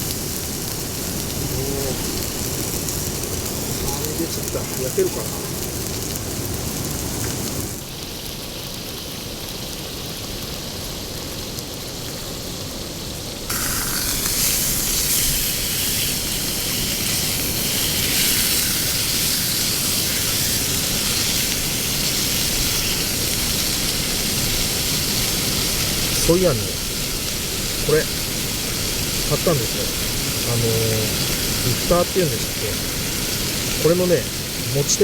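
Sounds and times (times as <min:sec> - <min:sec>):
heavy rain falling: 0:00.0 - 0:08.3, 0:16.4 - 0:35.0
bright hiss: 0:13.5 - 0:35.0.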